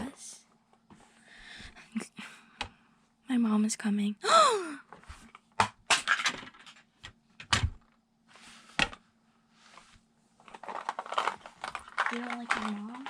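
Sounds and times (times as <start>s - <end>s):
toys knocking and clicking: 10.7s - 13.0s.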